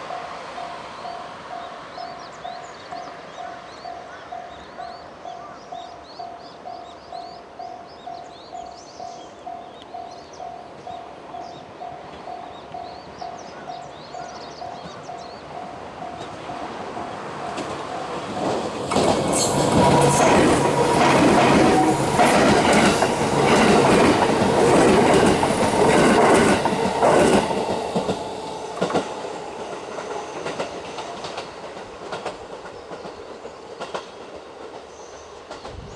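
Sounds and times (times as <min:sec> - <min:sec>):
train wheels clattering: 0:14.7 - 0:35.9
train motor tone: 0:18.3 - 0:29.0.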